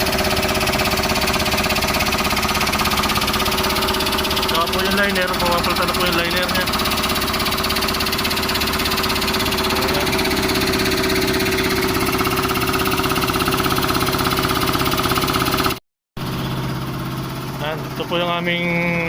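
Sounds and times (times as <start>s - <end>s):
engine idling: 0.0s - 19.0s.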